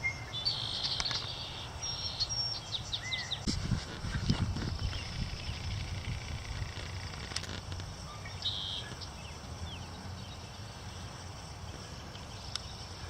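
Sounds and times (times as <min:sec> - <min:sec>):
bird chirps: 0:00.0 - 0:03.5, 0:08.0 - 0:10.6.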